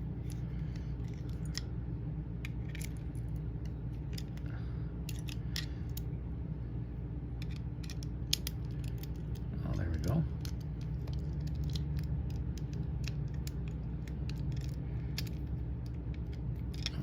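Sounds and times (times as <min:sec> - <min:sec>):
steady low hum: 0:00.0 - 0:17.0
lock parts clicking and clinking: 0:10.4 - 0:17.0.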